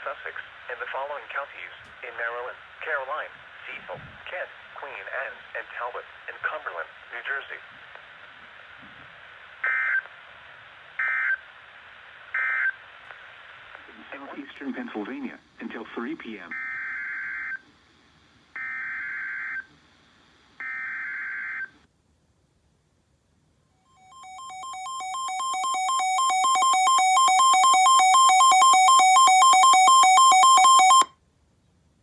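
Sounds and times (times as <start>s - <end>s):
two-tone attention signal: 24.0s - 31.1s.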